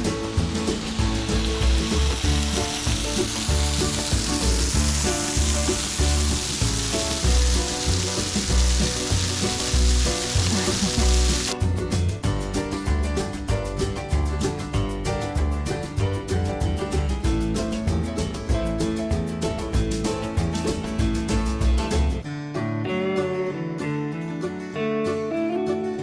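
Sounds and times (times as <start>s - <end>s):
waterfall rushing: 0.0s - 11.6s
background music with steady beat: 0.0s - 22.3s.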